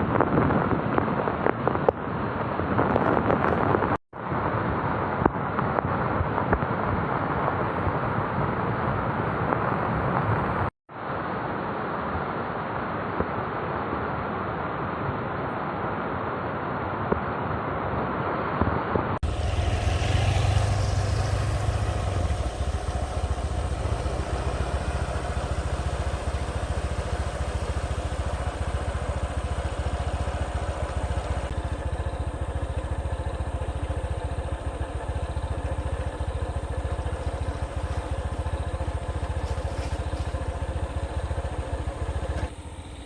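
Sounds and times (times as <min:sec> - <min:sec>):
vehicle engine running: 0:19.2 - 0:43.0.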